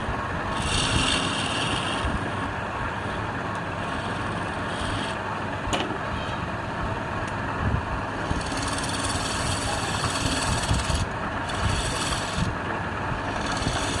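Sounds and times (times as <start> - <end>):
wood lathe rumbling: 0.0 - 5.6, 7.0 - 14.0
hiss of rubbing on spinning wood: 0.5 - 2.4, 3.8 - 5.2, 8.2 - 12.6, 13.2 - 14.0.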